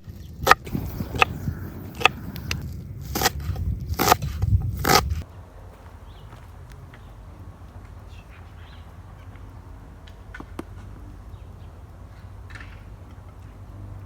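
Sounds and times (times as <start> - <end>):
faint birds calling: 0.0 - 3.2, 5.2 - 14.0.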